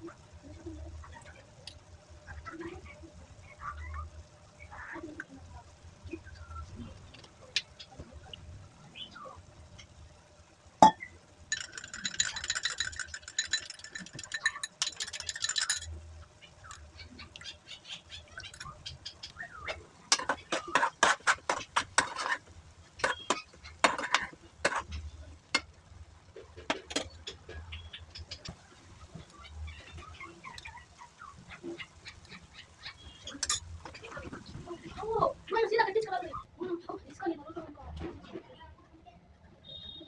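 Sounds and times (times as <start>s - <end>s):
utensils clinking and tapping: 10.8s - 16.0s, 18.4s - 18.8s, 20.1s - 25.7s, 26.5s - 27.6s, 33.3s - 34.2s
utensils scraping cookware: 11.5s - 15.9s, 20.1s - 25.0s, 33.3s - 34.1s.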